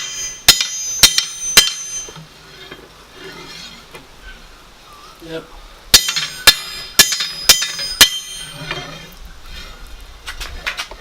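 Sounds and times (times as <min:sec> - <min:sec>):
hammer striking metal on anvil: 0:00.0 - 0:02.2, 0:05.9 - 0:08.8.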